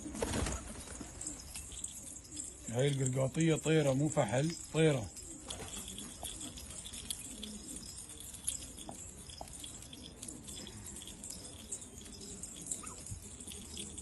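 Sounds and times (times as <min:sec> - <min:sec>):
pigeons cooing: 0:00.0 - 0:14.0.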